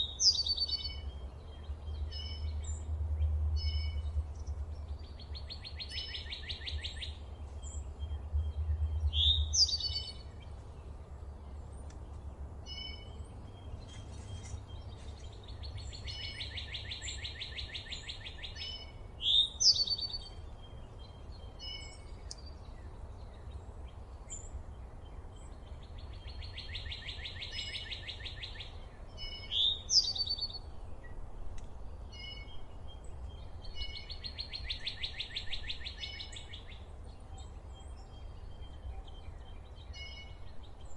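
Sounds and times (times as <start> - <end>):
bird chirps: 0.0 - 24.6, 25.2 - 31.2, 32.0 - 40.9
bird trill: 9.0 - 10.3, 15.6 - 20.4.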